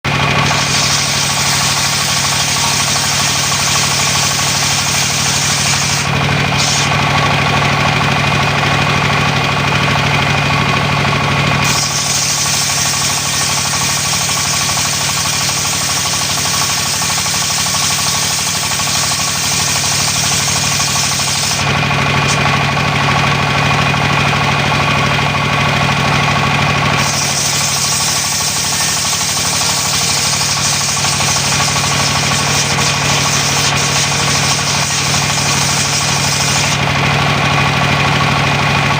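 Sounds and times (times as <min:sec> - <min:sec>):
sawmill engine hum: 0:00.0 - 0:38.9
saw cutting wood hiss: 0:00.3 - 0:07.7, 0:11.6 - 0:22.6, 0:27.0 - 0:37.0.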